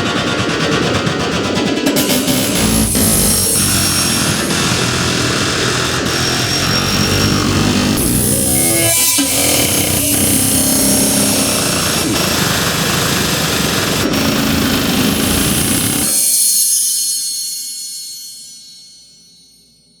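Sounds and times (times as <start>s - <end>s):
dense synthesized ringtone music: 1.9s - 16.1s
high ringing tail: 2.0s - 13.8s.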